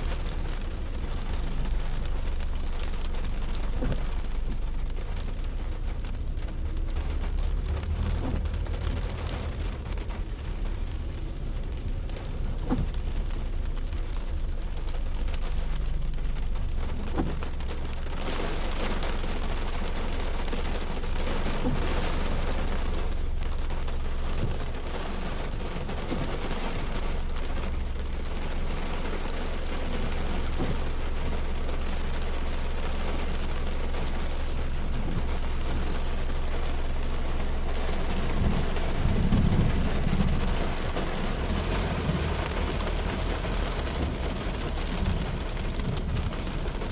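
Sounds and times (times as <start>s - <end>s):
wind and rain rushing: 0.0s - 46.9s
wind rumble on microphone: 38.0s - 46.9s.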